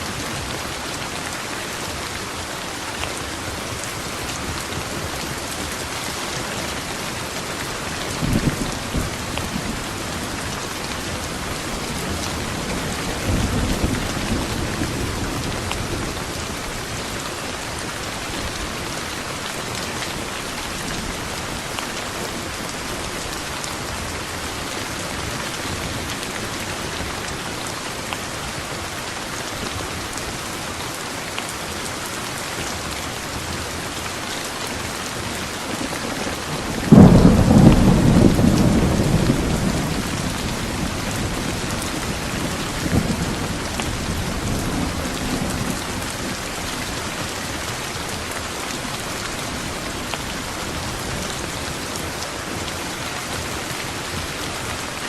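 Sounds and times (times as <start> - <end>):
heavy rain hissing: 0.0 - 55.0
thunderclap rumbling: 35.7 - 47.0.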